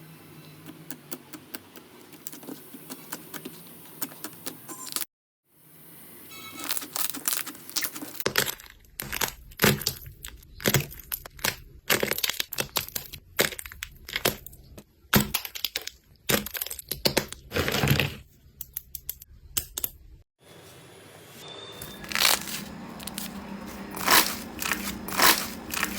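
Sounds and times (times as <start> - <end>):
crunchy slime crackling: 6.6 - 17.5, 21.9 - 25.9.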